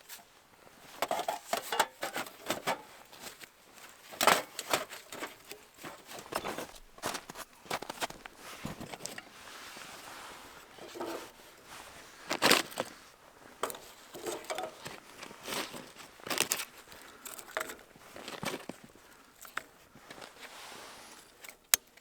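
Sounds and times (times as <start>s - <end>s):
cooking gear clicks and knocks: 0.9s - 9.4s, 10.8s - 11.4s, 12.3s - 12.9s, 13.6s - 20.5s, 21.2s - 22.0s.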